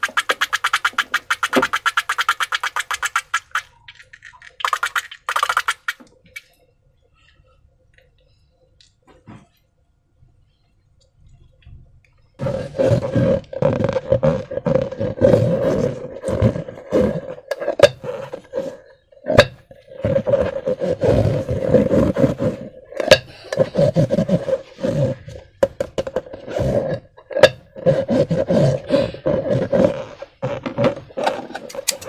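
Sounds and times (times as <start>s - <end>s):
wet squelching of slime: 0.0s - 6.5s.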